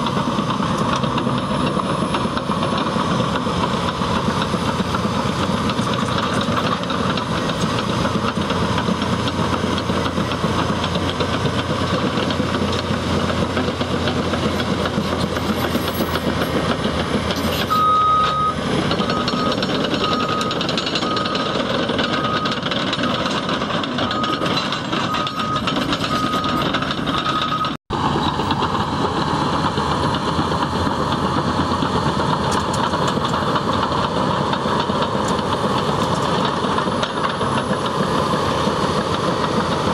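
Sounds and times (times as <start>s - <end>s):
bulldozer diesel engine: 0.0s - 39.9s
steel tracks clattering: 0.0s - 39.9s
reversing alarm beeping: 17.4s - 27.8s.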